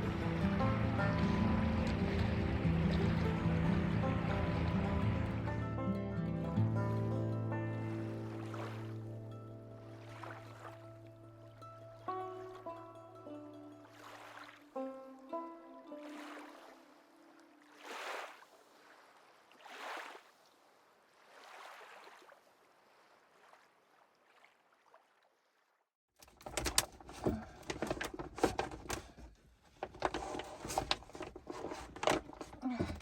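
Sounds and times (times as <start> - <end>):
washing water swells: 0.0 - 5.7, 16.1 - 25.2
clicking knocking and rustling: 26.2 - 33.0.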